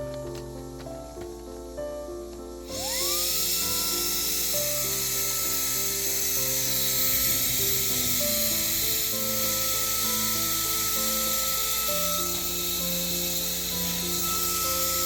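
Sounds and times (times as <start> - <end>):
slow melody of held notes: 0.0 - 15.0
steady hiss: 0.0 - 15.0.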